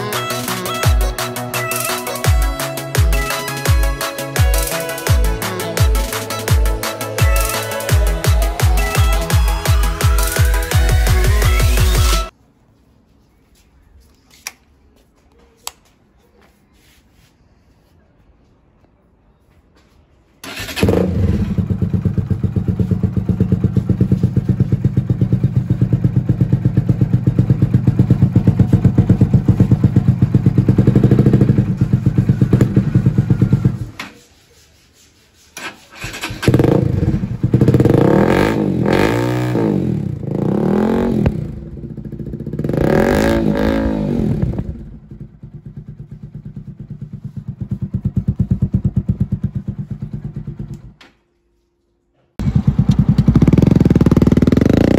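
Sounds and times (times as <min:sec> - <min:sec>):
motorcycle engine idling and revving: 0:02.4 - 0:12.4, 0:20.5 - 0:34.0, 0:36.0 - 0:51.0, 0:52.4 - 0:54.9.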